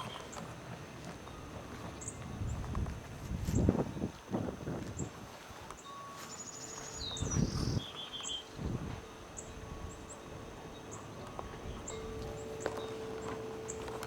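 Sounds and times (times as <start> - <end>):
small birds calling: 0.0 - 0.6, 5.7 - 8.6, 9.2 - 14.0.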